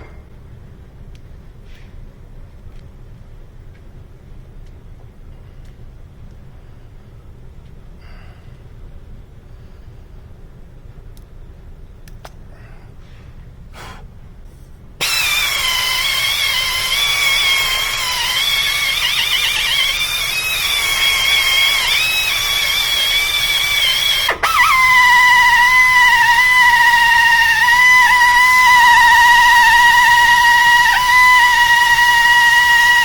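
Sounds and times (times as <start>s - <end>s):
power tool whining: 15.0s - 33.0s.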